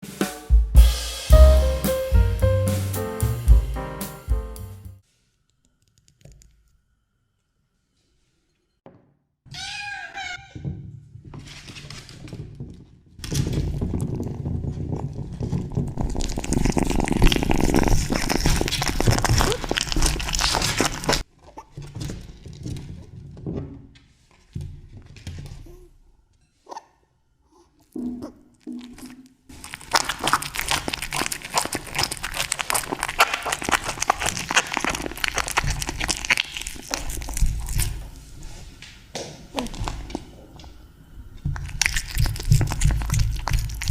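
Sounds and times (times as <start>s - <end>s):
kittens chewing and licking: 13.9s - 21.2s, 28.8s - 38.6s, 39.6s - 40.7s, 41.4s - 43.9s.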